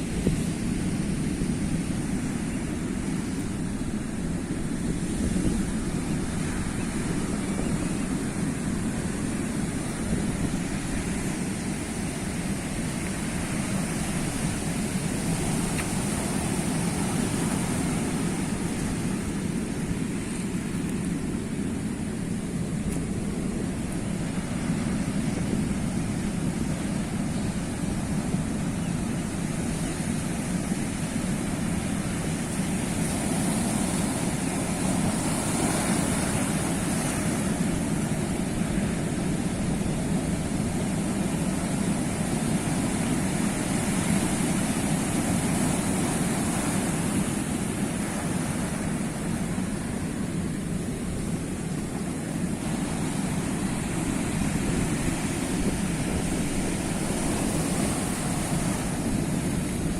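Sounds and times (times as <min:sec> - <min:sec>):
sea waves washing on shore: 0:00.0 - 0:59.9.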